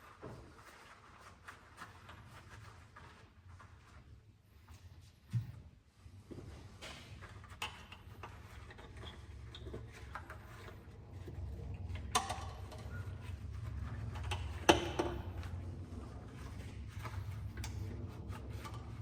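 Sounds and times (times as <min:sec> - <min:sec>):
steady low rumble: 0:10.9 - 0:19.0.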